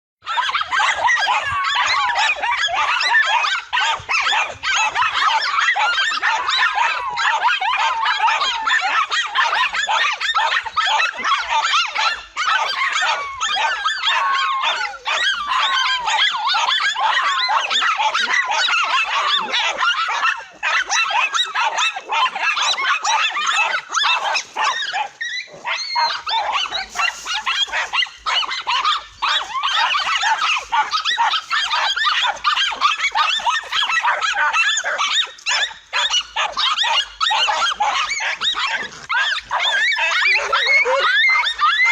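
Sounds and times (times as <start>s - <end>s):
pack of dogs barking: 0.2s - 41.9s.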